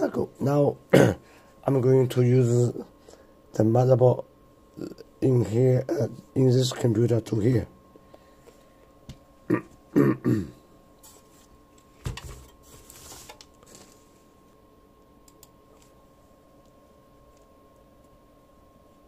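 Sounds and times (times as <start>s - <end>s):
rustling and scraping: 11.0s - 14.3s.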